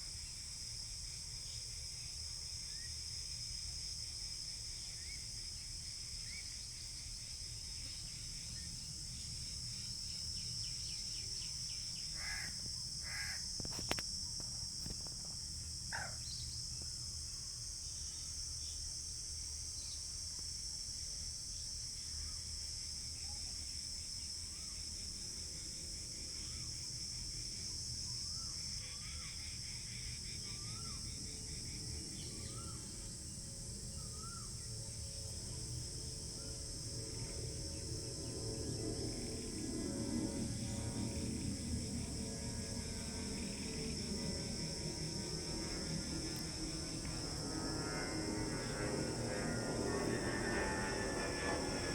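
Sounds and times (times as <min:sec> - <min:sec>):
crickets and insects droning: 0:00.0 - 0:51.9
bird cawing: 0:12.2 - 0:13.4, 0:15.9 - 0:16.2
low rumble: 0:35.9 - 0:51.9.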